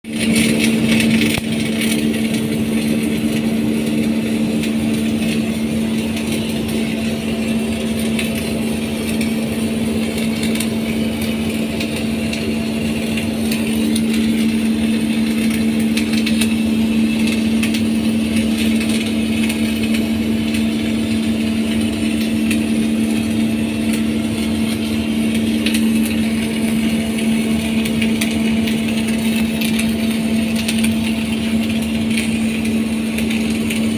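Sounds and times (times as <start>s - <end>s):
welding arc crackle: 0.0s - 33.9s
welding machine hum: 0.0s - 33.9s.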